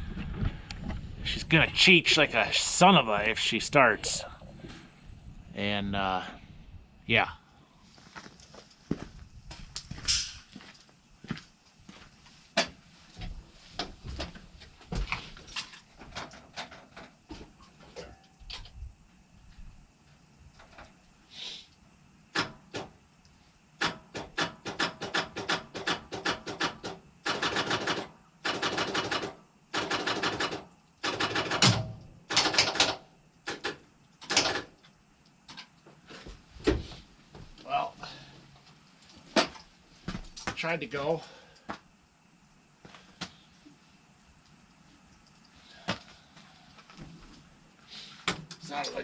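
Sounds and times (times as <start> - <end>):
truck starter clicking and chattering: 23.8 - 34.8.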